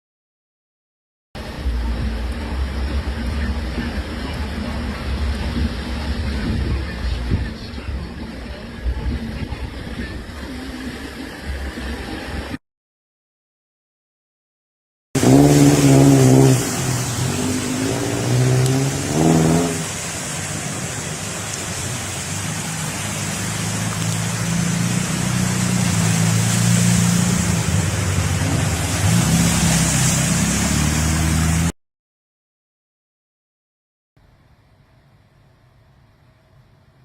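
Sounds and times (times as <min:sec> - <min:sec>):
engine running: 0:15.2 - 0:31.7.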